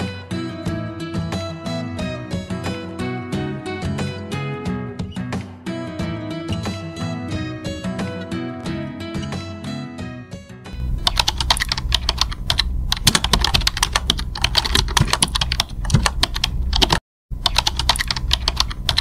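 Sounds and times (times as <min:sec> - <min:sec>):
typing on a keyboard: 0:11.0 - 0:19.0.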